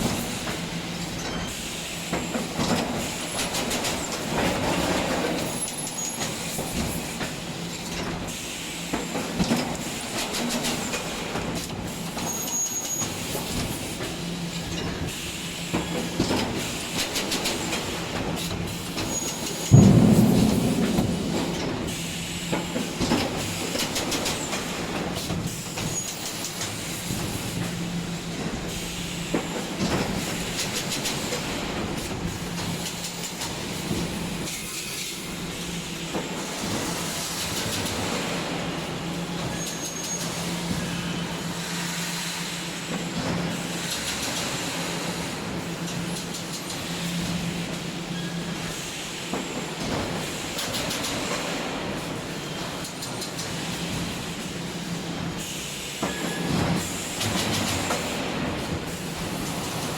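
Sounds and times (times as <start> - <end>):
machine clicks and clatter: 2.1 - 8.3, 15.7 - 35.3, 42.9 - 47.9, 49.3 - 54.6, 55.2 - 59.9.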